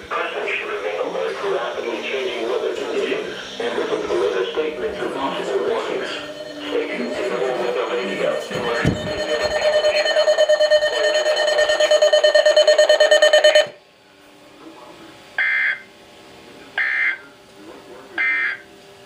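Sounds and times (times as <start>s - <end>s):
screechy data bursts: 3.2s - 13.7s
pulsing alarm tone: 3.4s - 13.8s.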